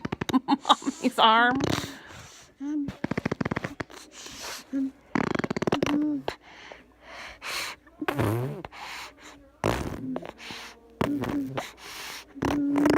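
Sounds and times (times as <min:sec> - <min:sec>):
baby blowing raspberries: 0:01.6 - 0:06.4, 0:07.3 - 0:12.9.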